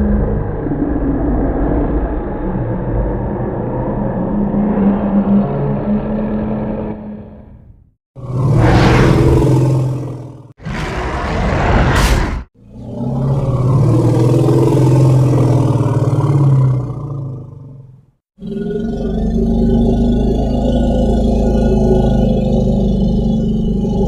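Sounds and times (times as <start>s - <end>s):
dinosaur roar: 8.2s - 17.6s.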